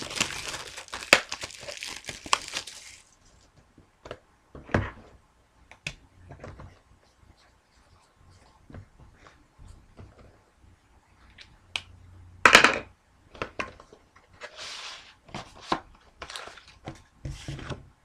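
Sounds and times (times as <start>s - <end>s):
wrapper tearing: 0.0s - 3.1s
wrapper rustling: 0.0s - 3.5s.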